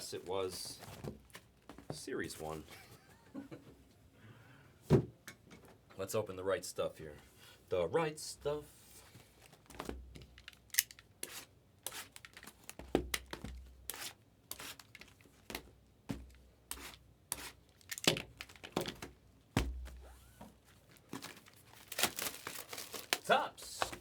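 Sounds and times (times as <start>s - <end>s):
wrapping torn and crinkled: 10.3s - 12.8s, 13.9s - 15.6s, 16.7s - 19.1s, 20.0s - 24.0s.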